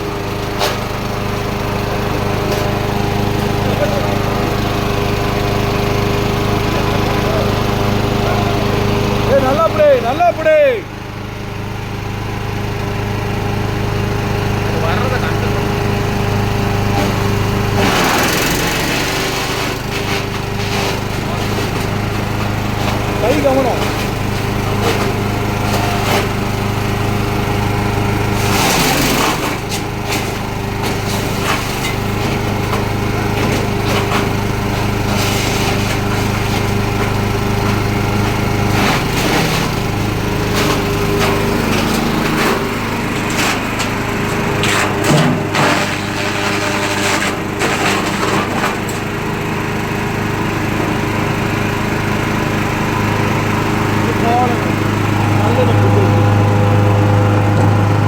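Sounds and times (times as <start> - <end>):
wood chipper engine running: 0.0 - 58.0
wood cracking and crunching: 28.4 - 49.1.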